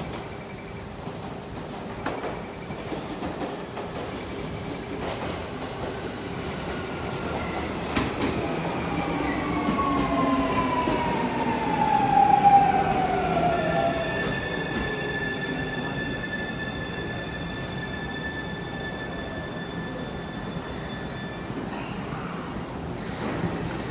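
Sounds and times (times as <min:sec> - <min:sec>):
train running inside car: 0:09.2 - 0:23.9.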